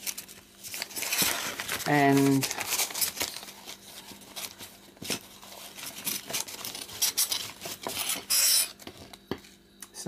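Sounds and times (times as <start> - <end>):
paper wrapping crinkling: 0.0 - 9.2.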